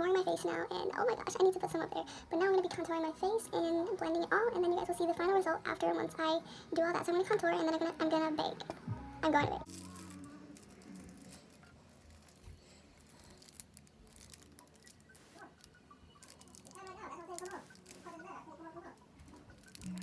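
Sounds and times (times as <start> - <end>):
faint pitched sound: 8.8 - 20.0
makeup clicks and rustles: 9.7 - 20.0.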